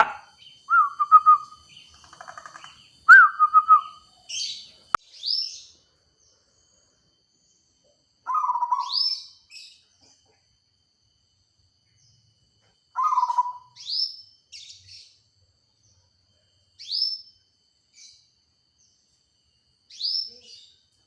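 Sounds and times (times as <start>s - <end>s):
dove cooing: 8.3s - 9.0s, 13.0s - 13.8s.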